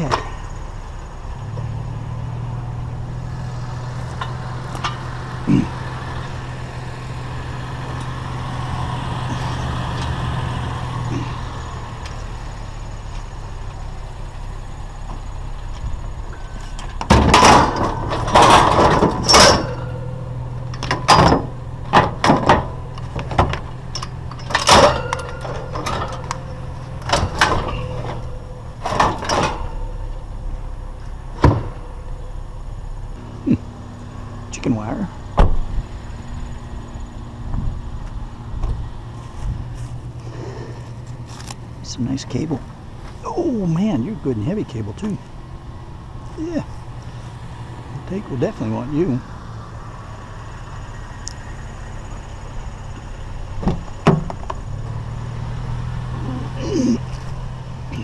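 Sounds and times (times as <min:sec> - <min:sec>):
vehicle engine humming: 0:00.0 - 0:58.0
scrap metal clanking and banging: 0:03.9 - 0:10.2, 0:16.3 - 0:33.2.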